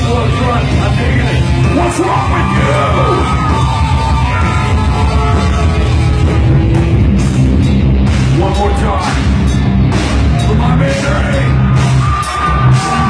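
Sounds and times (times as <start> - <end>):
metal band playing live: 0.0 - 13.0.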